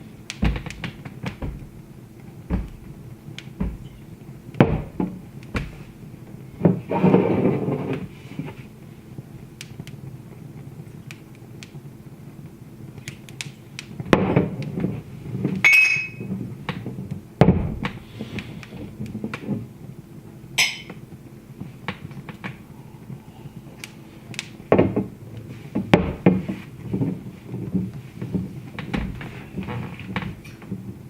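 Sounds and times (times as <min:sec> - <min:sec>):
wood fire crackling: 0:00.0 - 0:31.0
heavy knocks: 0:00.4 - 0:01.9, 0:02.5 - 0:03.0, 0:03.6 - 0:05.9, 0:25.8 - 0:26.6
ringing high tones: 0:15.7 - 0:16.3.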